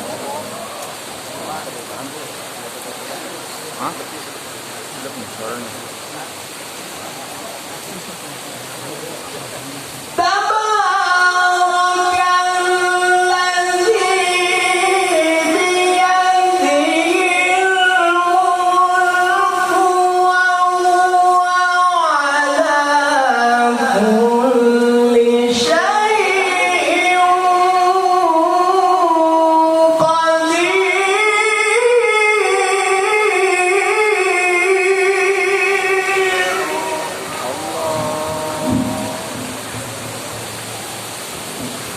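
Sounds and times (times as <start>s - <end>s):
person reciting melodically: 10.2s - 40.0s.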